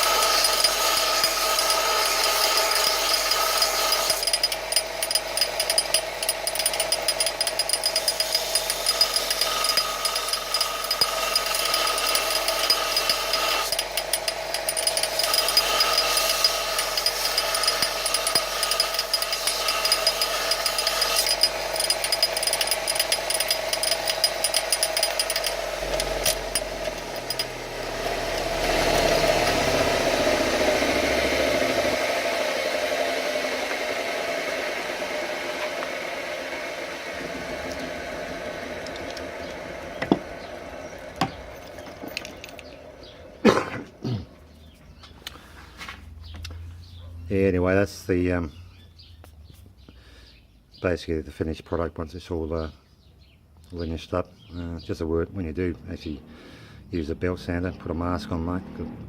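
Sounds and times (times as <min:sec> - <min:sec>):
belt sander grinding metal: 0:00.0 - 0:43.2.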